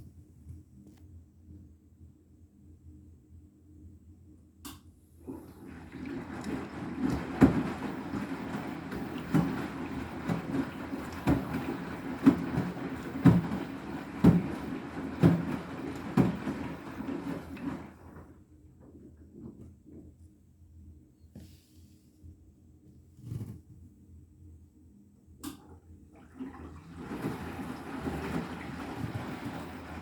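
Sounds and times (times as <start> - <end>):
sloshing water: 5.3 - 18.3, 26.2 - 30.0
washing machine drum tumbling: 5.6 - 18.3, 26.3 - 30.0.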